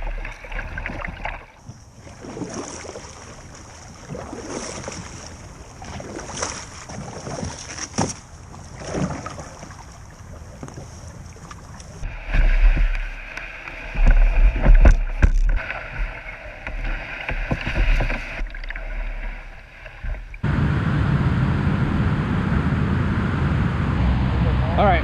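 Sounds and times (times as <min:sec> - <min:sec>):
paddle splashes: 0:00.0 - 0:20.4
paddle knocking on hull: 0:12.0 - 0:20.4
steady rushing noise: 0:12.0 - 0:25.0.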